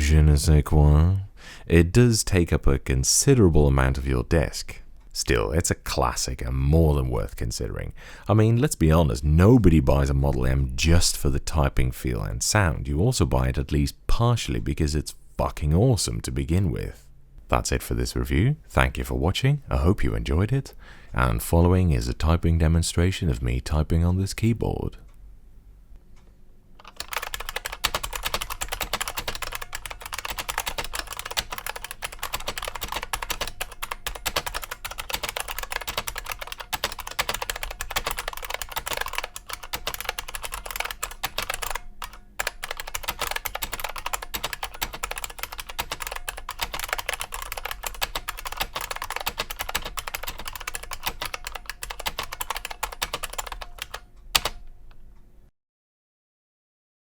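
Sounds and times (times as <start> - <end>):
clicky keyboard typing: 26.8 - 54.7.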